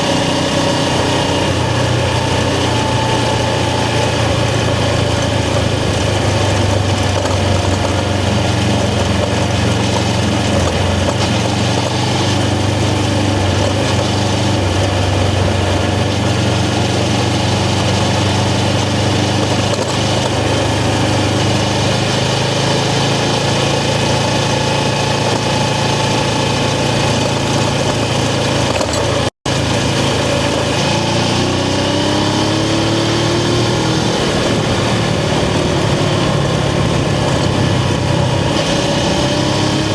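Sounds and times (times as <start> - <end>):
motorcycle engine running at low revs: 0.0 - 39.9.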